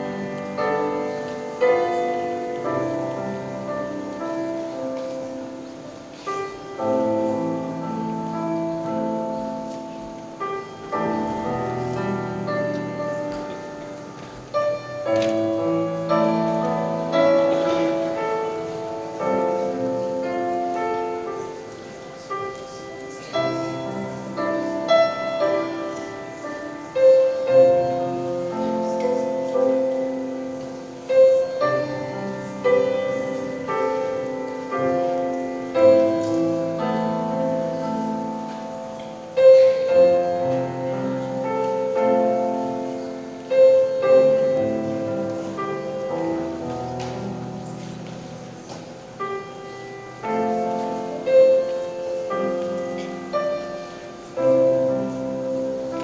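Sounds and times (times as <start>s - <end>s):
slow piano music: 0.0s - 56.0s.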